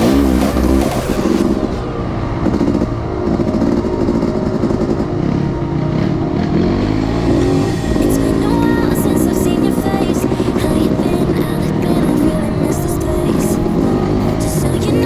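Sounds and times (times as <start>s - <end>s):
dirt bike engine revving: 0.0s - 1.7s.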